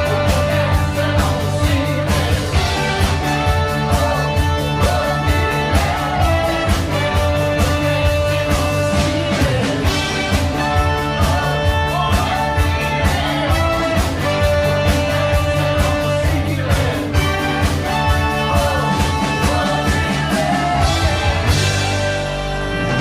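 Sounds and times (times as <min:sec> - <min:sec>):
rock band playing: 0:00.0 - 0:23.0.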